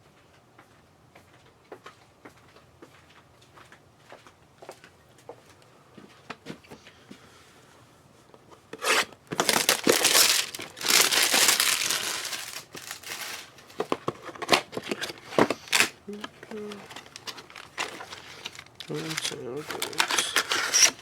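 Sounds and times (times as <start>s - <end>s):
wrapper crinkling and tearing: 8.8s - 21.0s.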